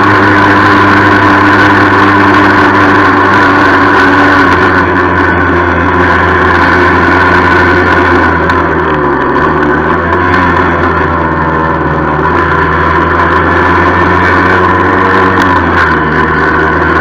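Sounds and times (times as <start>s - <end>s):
moped engine running: 0.0s - 17.0s
rattle: 0.0s - 17.0s.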